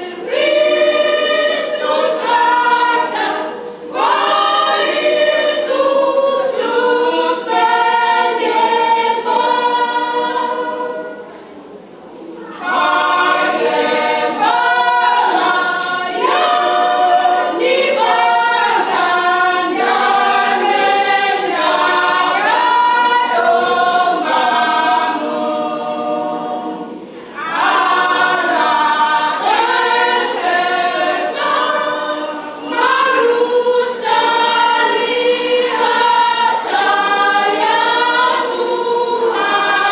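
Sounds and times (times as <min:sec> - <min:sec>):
women's choir singing a hymn: 0:00.0 - 0:39.9
singers breathing: 0:27.0 - 0:27.4.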